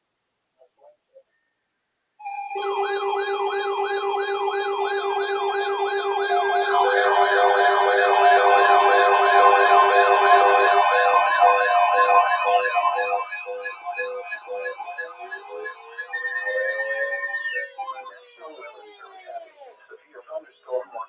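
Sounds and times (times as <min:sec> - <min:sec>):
steady tone: 0:02.2 - 0:17.2
siren rising yelp: 0:02.2 - 0:20.0
pulsing tone: 0:02.2 - 0:20.2
second siren: 0:02.2 - 0:20.2.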